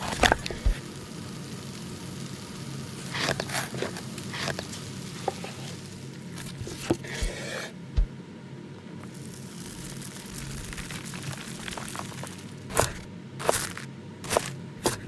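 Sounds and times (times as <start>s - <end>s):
steady low hum: 0.0s - 15.0s
utensils scraping and clicking: 3.0s - 5.8s, 12.7s - 15.0s.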